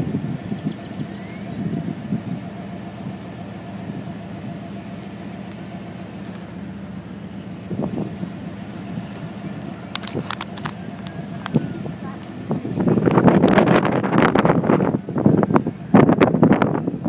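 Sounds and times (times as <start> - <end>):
engine idling hum: 0.0 - 17.0.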